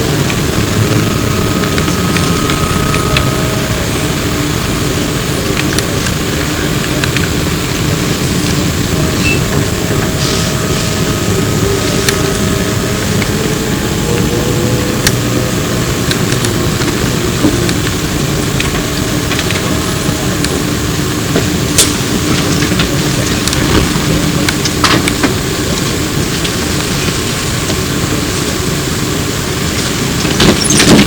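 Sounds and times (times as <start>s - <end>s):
faint tone: 0.0s - 6.6s
rumble of tyres and body: 0.0s - 31.0s.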